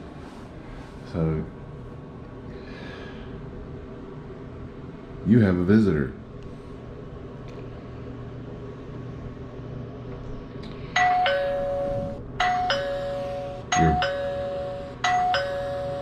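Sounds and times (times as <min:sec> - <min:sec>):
steady low hum: 0:00.0 - 0:16.0
doorbell ding-dong chime: 0:11.0 - 0:16.0.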